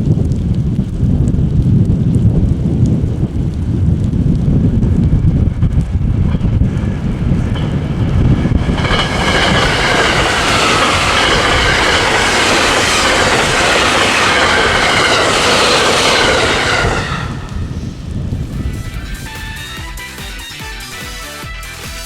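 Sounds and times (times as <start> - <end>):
wind buffeting microphone: 0.0 - 20.2
train wheels clattering on rails: 4.6 - 20.7
high ringing whine: 4.9 - 19.8.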